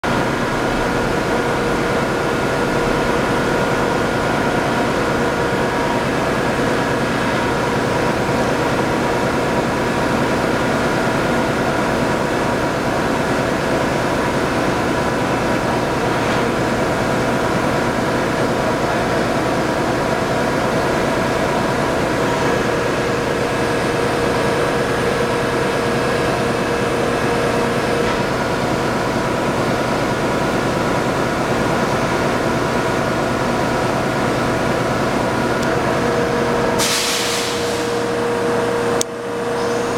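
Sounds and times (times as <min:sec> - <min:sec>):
metal spinning lathe drone: 0:00.1 - 0:39.9.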